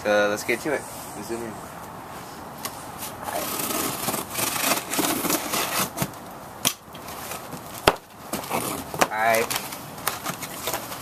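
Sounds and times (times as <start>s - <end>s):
cardboard box rustling and scraping: 2.9s - 6.2s, 7.0s - 11.0s.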